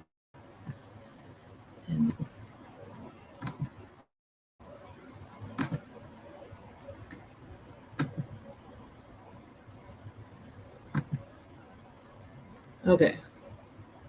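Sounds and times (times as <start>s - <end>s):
faint room noise: 0.4s - 14.0s
computer mouse clicking: 3.4s - 3.8s, 5.6s - 5.9s, 7.0s - 7.3s, 7.9s - 8.4s, 10.9s - 11.3s.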